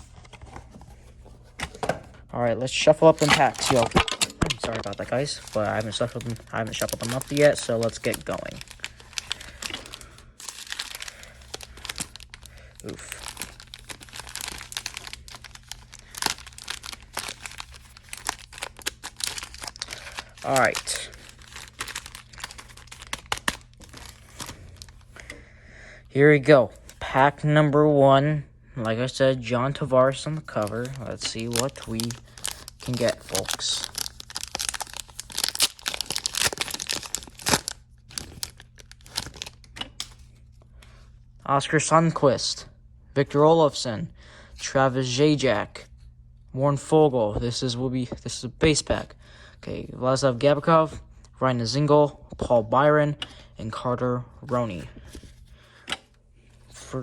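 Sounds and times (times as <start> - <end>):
foil wrappers crinkling: 2.8 - 25.3, 30.2 - 40.3.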